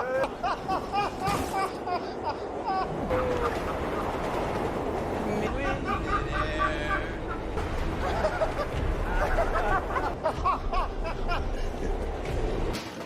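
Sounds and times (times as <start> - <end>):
steady low rumble: 0.3 - 12.8
people talking: 5.2 - 7.3.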